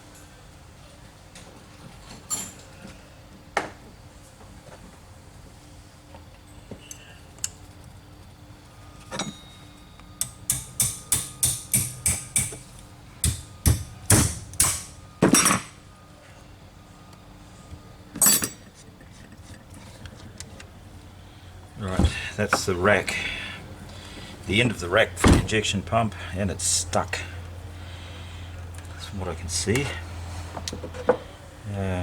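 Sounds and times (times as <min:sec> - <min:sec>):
hand tools tapping on metal: 0:10.2 - 0:15.8
louder knocks on metal: 0:10.5 - 0:12.6, 0:13.2 - 0:15.4.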